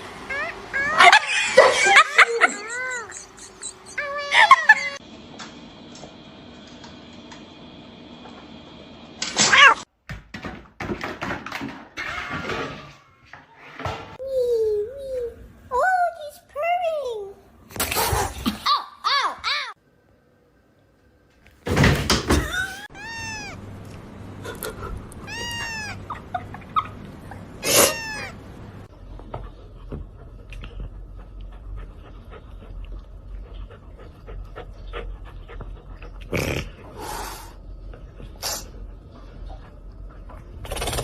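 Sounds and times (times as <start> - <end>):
cat meowing: 0.3 - 1.2, 22.4 - 23.6, 25.2 - 26.2, 27.6 - 28.4.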